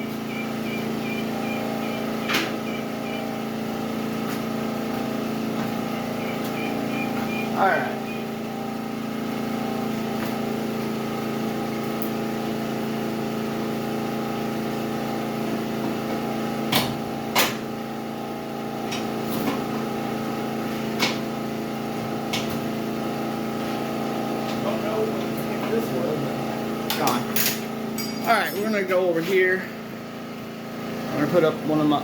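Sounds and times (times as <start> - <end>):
generator engine running: 0.0 - 32.0.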